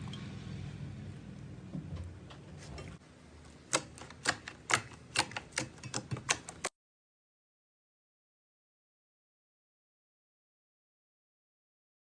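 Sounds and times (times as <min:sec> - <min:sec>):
low hum: 0:00.0 - 0:03.0
sharp irregular clicks: 0:03.7 - 0:06.7.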